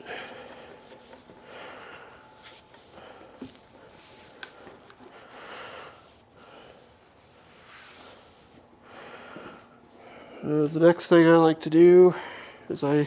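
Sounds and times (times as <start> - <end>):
towel wiping metal: 0.0 - 8.7.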